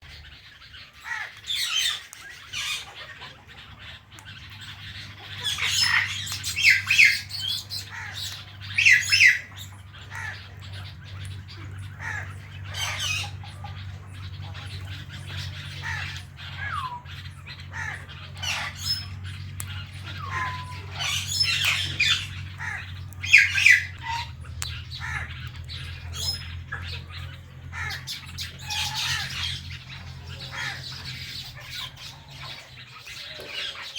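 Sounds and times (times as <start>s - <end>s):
parrots squawking: 0.1s - 33.9s
low hum: 7.3s - 32.8s.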